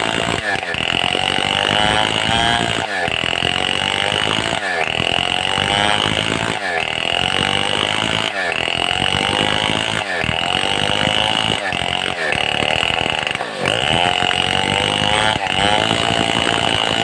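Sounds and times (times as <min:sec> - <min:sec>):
chainsaw cutting wood: 0:00.0 - 0:17.0.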